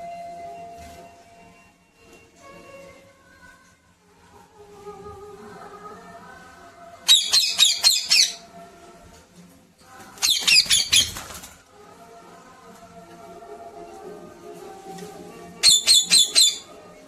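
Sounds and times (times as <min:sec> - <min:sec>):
parrot squawking: 0:07.1 - 0:08.4, 0:10.2 - 0:11.2, 0:15.6 - 0:16.8.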